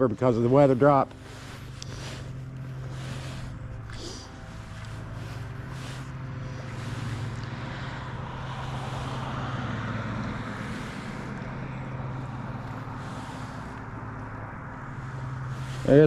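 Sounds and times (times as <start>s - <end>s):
low motor hum: 0.0s - 16.0s
vehicle passing: 0.0s - 16.0s.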